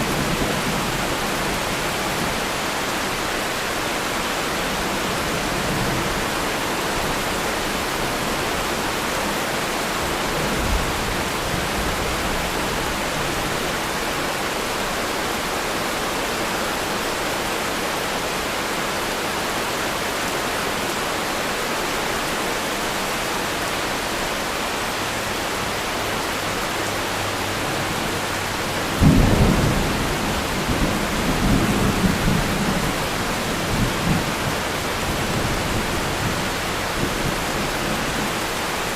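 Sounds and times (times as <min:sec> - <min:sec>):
steady rain: 0:00.0 - 0:38.9
loud thunderclap rumbling: 0:27.9 - 0:38.0
distant thunder: 0:28.4 - 0:37.4.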